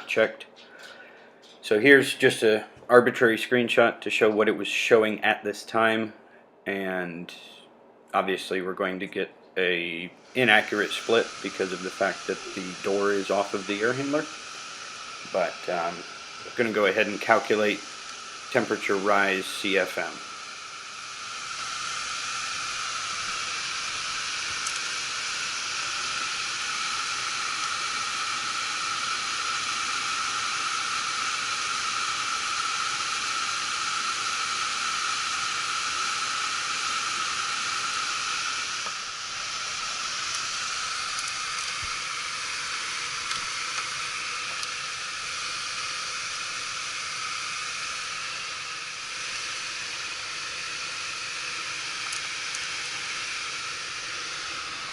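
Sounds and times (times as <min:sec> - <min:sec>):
blower rushing air: 0:00.0 - 0:02.8, 0:09.6 - 0:54.9.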